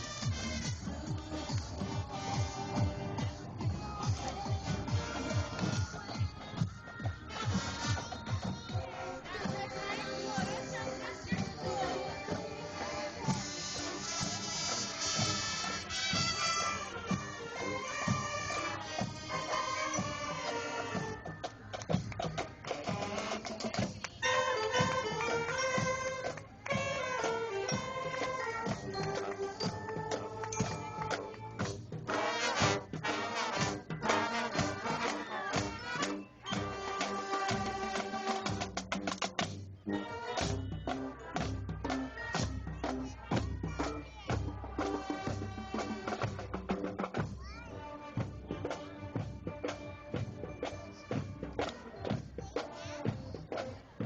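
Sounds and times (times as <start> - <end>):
brass band music: 0.0 - 6.2, 7.2 - 21.3, 22.3 - 54.0
bass drum beat: 0.0 - 12.5, 40.4 - 47.7.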